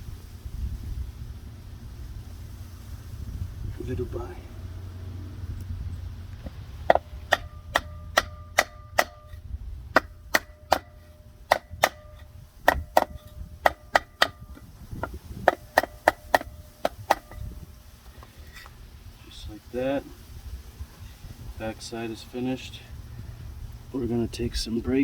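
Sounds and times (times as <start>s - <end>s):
mallet knocking on wood: 6.9s - 9.4s, 10.0s - 14.6s, 15.4s - 17.5s.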